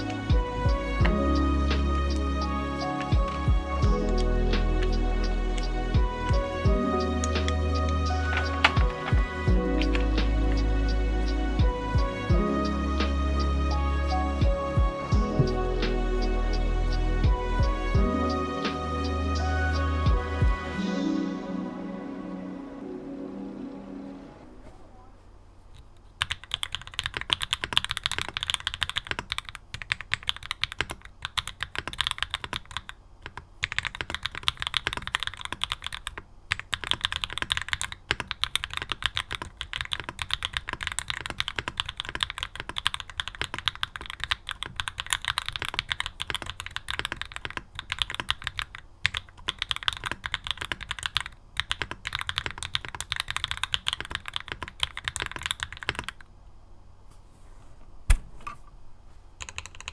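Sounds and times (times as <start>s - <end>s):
fast typing on mechanical keyboard: 2.0s - 9.2s, 26.2s - 56.2s, 59.4s - 59.9s.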